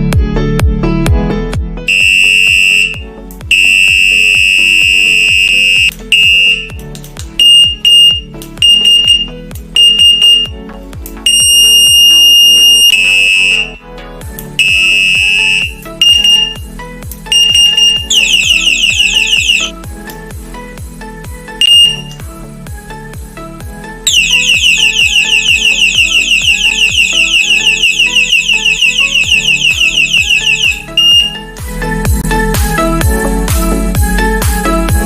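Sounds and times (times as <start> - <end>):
background music with beat: 0.0 - 35.0
electronic bicycle horn beeping: 1.9 - 6.8, 7.4 - 13.9, 14.6 - 19.8, 21.6 - 22.2, 24.1 - 31.6.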